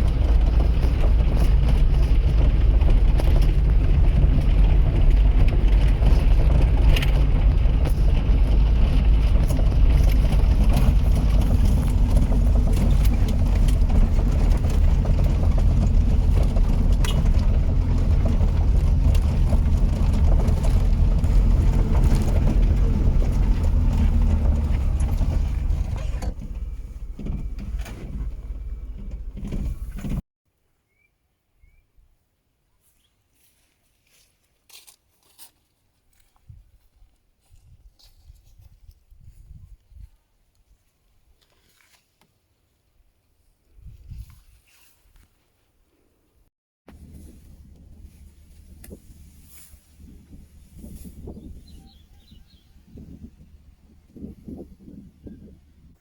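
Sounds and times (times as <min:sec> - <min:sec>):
road noise: 0:00.0 - 0:30.2, 0:46.9 - 0:56.0
vehicle engine rumble: 0:00.0 - 0:30.2, 0:46.9 - 0:56.0.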